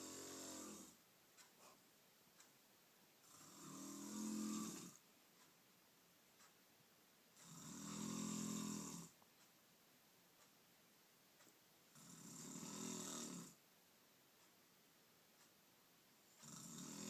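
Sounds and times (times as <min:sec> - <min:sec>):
woman snoring: 0:00.0 - 0:01.0, 0:03.2 - 0:05.0, 0:07.4 - 0:09.1, 0:11.9 - 0:13.6, 0:16.4 - 0:17.0.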